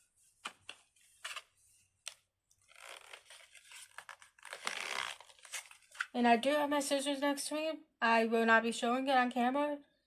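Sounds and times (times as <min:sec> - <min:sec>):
packaging crinkling and rustling: 0:02.6 - 0:06.1.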